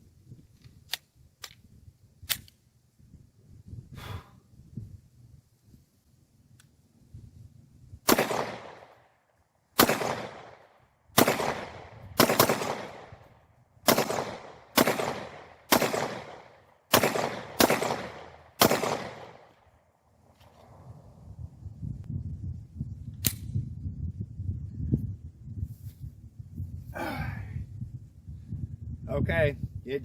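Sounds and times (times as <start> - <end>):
pistol shots with echo: 8.1 - 8.9, 9.8 - 10.6, 11.2 - 13.2, 13.9 - 19.5.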